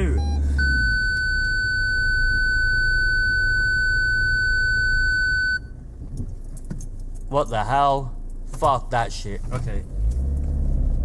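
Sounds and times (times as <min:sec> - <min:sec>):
high electronic beep tone: 0:00.0 - 0:05.7.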